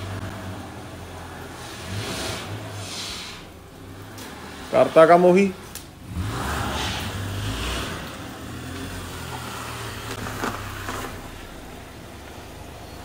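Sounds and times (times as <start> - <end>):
car engine running: 0.0 - 13.0
broad hiss: 1.5 - 3.6.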